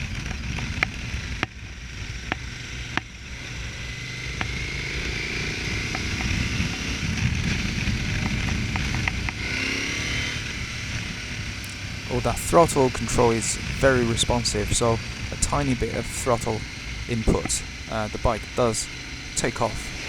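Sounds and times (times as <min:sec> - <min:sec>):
motorcycle engine running: 0:00.0 - 0:20.0
wind hiss: 0:09.4 - 0:20.0.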